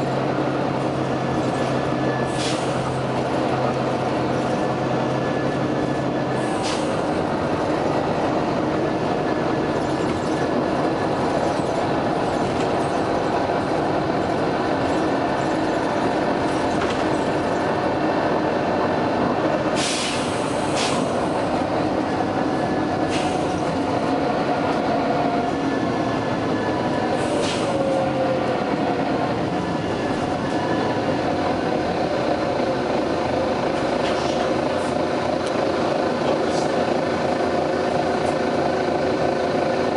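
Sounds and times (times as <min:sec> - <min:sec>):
bus diesel engine running: 0:00.0 - 0:39.9
road noise: 0:00.0 - 0:39.9
air hisses: 0:19.8 - 0:21.1.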